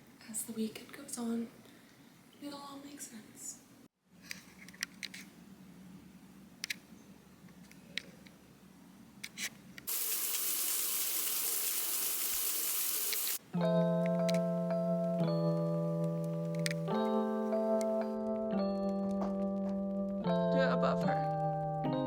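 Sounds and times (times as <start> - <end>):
kitchen tap running: 9.9 - 13.4
music with chime-like chords: 13.5 - 22.0.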